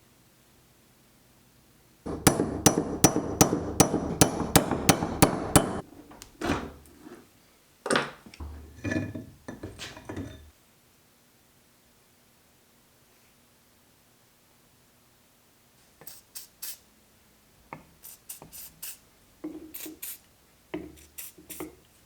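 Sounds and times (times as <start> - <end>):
hammer striking metal punch: 2.1 - 5.9.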